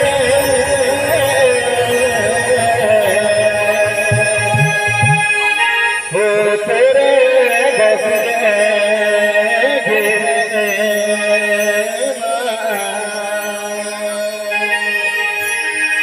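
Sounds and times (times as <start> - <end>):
held keyboard notes: 1.2 - 5.6.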